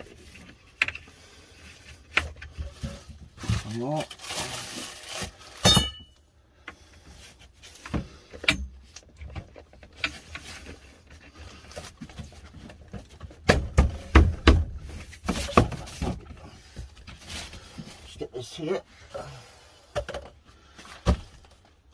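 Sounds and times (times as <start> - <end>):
shelving parts knocking and clunking: 12.8 - 17.0.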